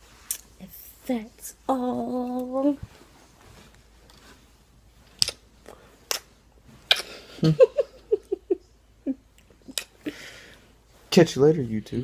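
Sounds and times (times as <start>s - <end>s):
person giggling: 6.9s - 10.0s.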